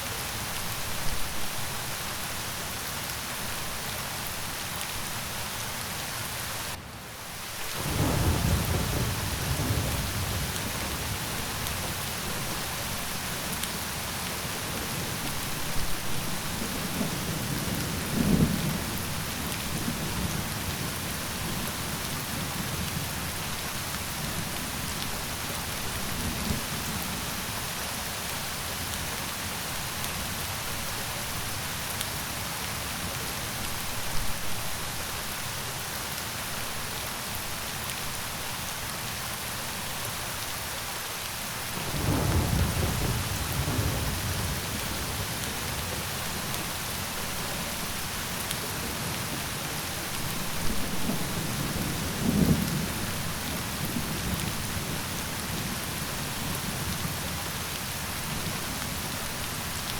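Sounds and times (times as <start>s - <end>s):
steady rain: 0.0s - 59.9s
thunder rumbling: 41.8s - 46.4s.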